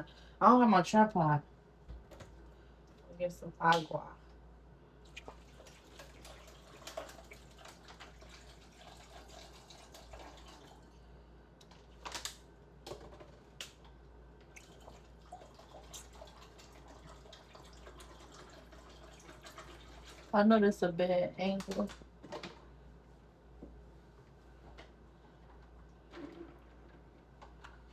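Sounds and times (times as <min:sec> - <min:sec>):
water dripping and trickling: 0:05.1 - 0:10.8, 0:14.5 - 0:20.3.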